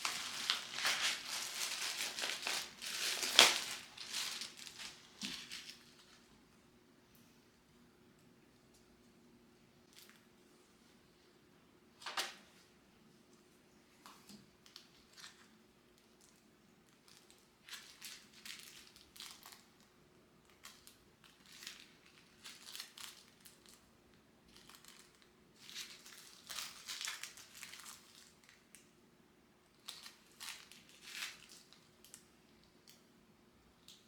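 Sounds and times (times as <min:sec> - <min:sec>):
material rustling and crinkling: 0:00.0 - 0:06.4, 0:24.5 - 0:28.7
faint steady hum: 0:00.0 - 0:34.0.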